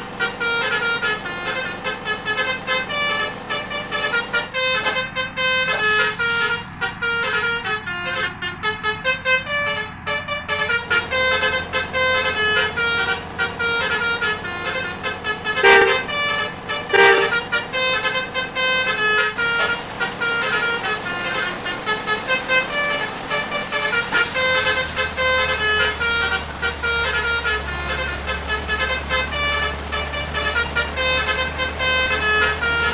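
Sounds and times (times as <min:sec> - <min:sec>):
loud horn blasts: 0:00.0 - 0:32.9
low engine hum: 0:00.0 - 0:32.9
musical bus air horns: 0:00.0 - 0:32.9.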